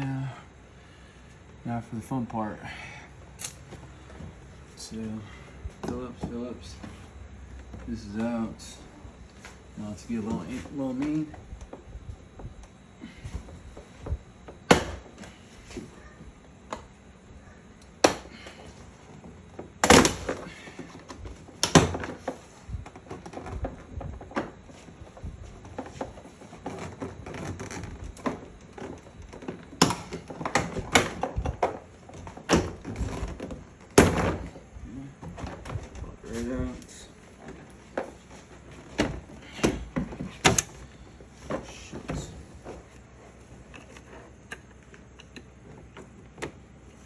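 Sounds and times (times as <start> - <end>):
scraping and handling noise: 17.7 - 47.0.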